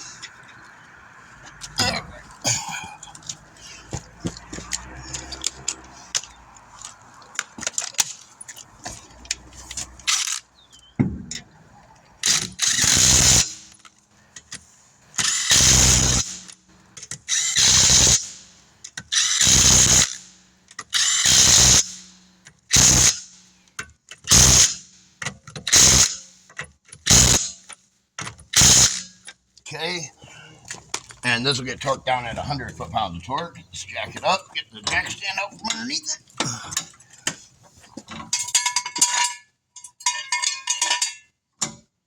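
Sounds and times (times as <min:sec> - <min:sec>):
impact wrench bursts: 0:12.2 - 0:13.8, 0:15.2 - 0:23.6, 0:24.2 - 0:25.0, 0:25.7 - 0:26.4, 0:27.0 - 0:27.7, 0:28.5 - 0:29.2.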